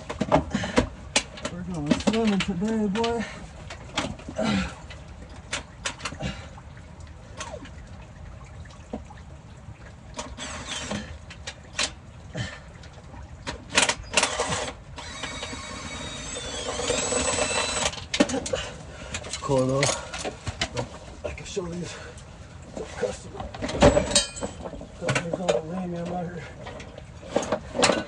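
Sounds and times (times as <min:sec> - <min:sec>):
small motor whine: 0:14.2 - 0:18.0
metal knocks and clanks: 0:23.5 - 0:28.0.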